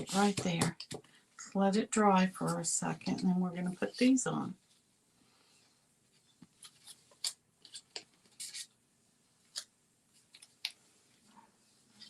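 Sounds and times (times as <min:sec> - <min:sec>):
paper card pieces rustling: 0:06.4 - 0:08.8.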